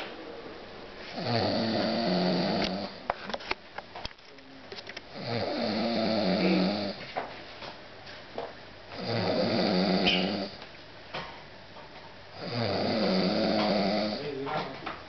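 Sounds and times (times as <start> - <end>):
snoring: 1.1 - 3.0, 5.1 - 7.0, 8.9 - 10.6, 12.4 - 14.4.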